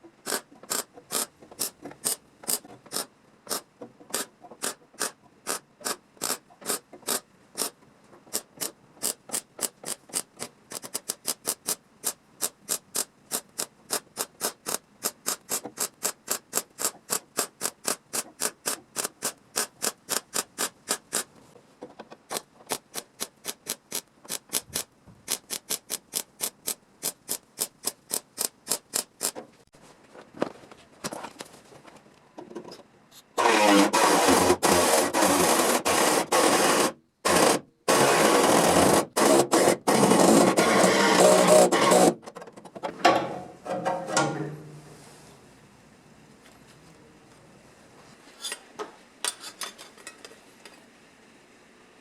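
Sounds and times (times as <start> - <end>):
hand tool striking sheet metal: 43.1 - 44.8.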